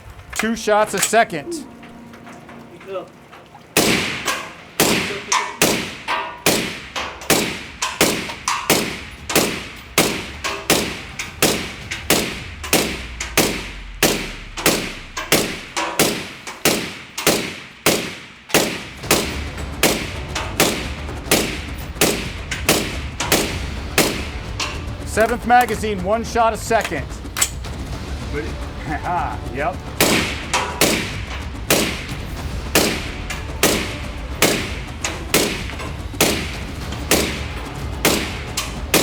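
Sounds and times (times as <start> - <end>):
suppressed rifle shots: 3.8 - 25.9, 29.9 - 39.0.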